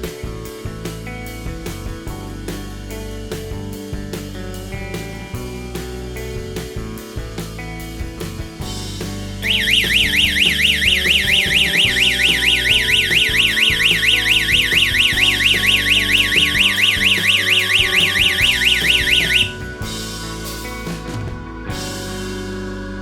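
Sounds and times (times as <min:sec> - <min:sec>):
background music: 0:00.0 - 0:23.0
security alarm siren warbling: 0:09.4 - 0:21.4.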